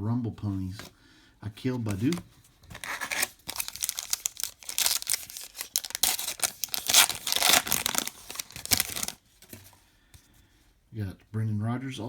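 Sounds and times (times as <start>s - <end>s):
wrapper tearing and crinkling: 1.9s - 9.2s.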